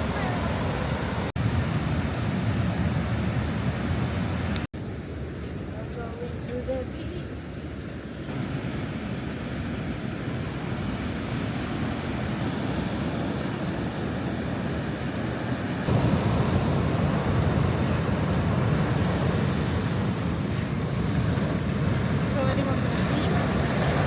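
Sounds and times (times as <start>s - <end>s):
coastal wind: 0.0s - 24.0s
sea surf washing on shore: 8.3s - 24.0s.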